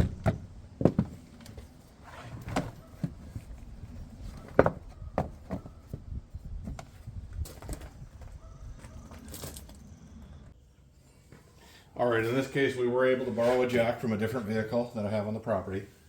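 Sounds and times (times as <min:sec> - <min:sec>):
knocks and clunks: 0:00.0 - 0:01.6, 0:04.2 - 0:09.2.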